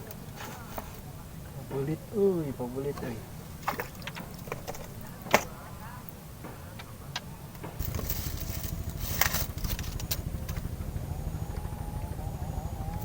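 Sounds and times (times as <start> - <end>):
faint whine: 0.0 - 13.0
small engine running: 7.7 - 13.0.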